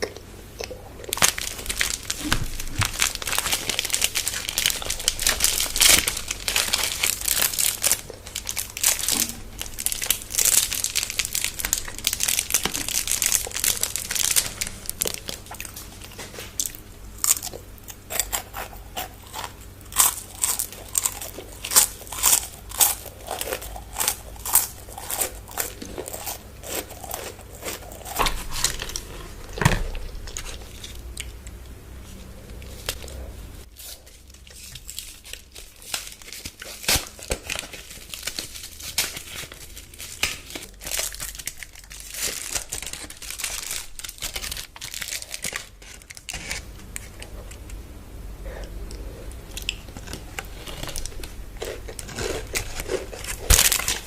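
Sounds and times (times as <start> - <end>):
crunchy bites: 0.0 - 31.7, 48.8 - 54.0
wrappers crinkling and tearing: 1.0 - 31.0, 32.2 - 47.6, 49.5 - 54.0.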